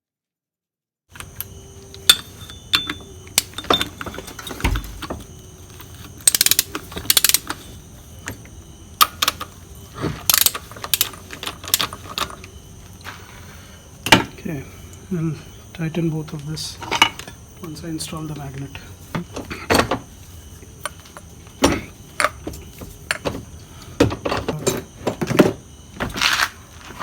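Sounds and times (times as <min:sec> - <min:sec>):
metal tools clinking: 0:01.2 - 0:13.3, 0:24.2 - 0:25.5
hand ratchet clicking: 0:05.9 - 0:07.6, 0:10.3 - 0:12.4.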